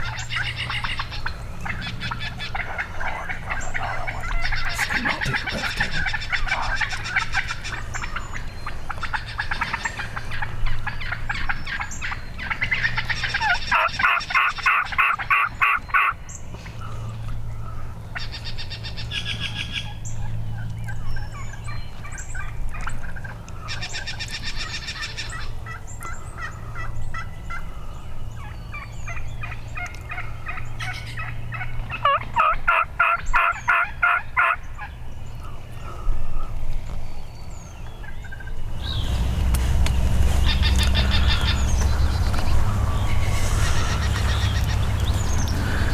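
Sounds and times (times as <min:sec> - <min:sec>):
turkeys gobbling: 0:00.0 - 0:16.1, 0:29.1 - 0:34.7, 0:38.3 - 0:45.9.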